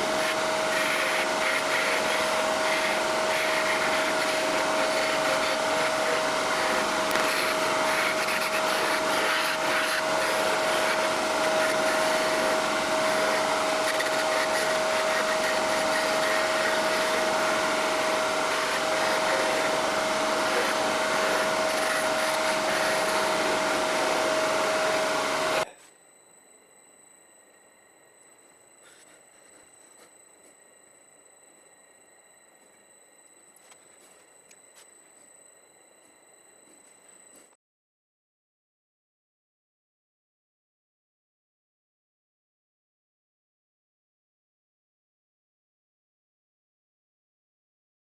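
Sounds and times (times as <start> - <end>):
workshop machinery running: 0.0 - 37.6.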